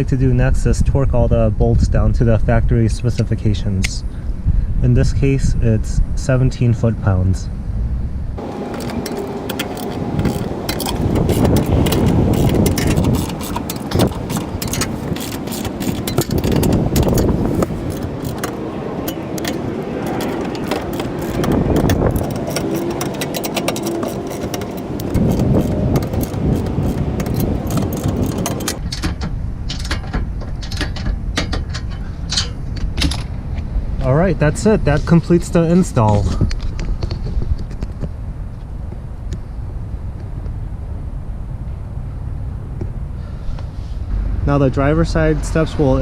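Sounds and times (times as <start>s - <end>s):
ratchet wrench clicking: 8.7s - 28.8s.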